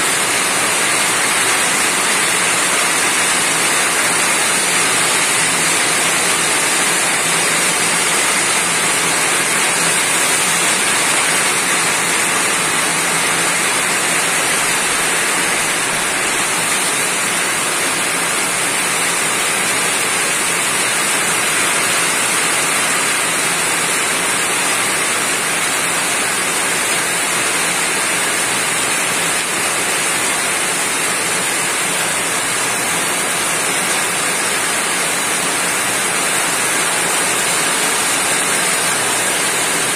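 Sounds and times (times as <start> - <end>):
rain falling on a roof: 0.0 - 39.9.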